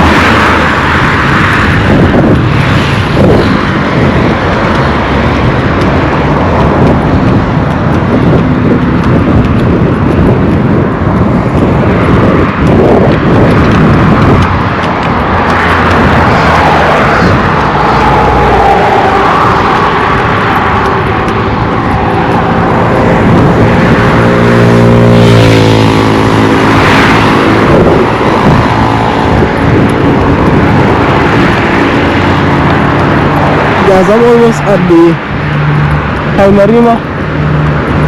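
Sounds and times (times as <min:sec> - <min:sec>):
traffic rumble on busy road: 0:00.0 - 0:38.0.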